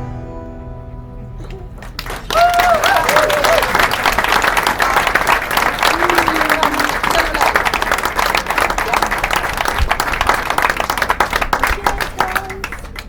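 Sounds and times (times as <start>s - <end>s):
audience applauding: 1.4s - 13.0s
people calling out in crowd: 5.8s - 7.8s.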